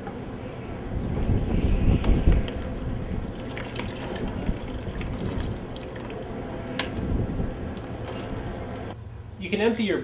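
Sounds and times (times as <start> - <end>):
water dripping into a bucket: 3.2 - 6.4.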